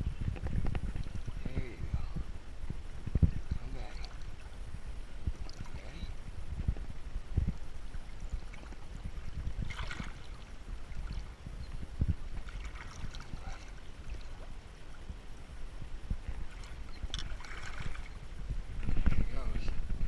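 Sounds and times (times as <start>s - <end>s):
low rumbling on microphone: 0.0s - 20.0s
river water gurgling: 7.6s - 11.6s, 12.3s - 15.6s, 16.2s - 18.5s.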